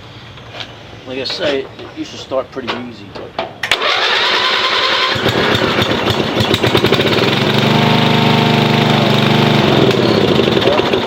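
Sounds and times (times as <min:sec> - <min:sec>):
lawn tractor engine running: 0:03.6 - 0:11.0
starter cranking engine: 0:03.7 - 0:11.0.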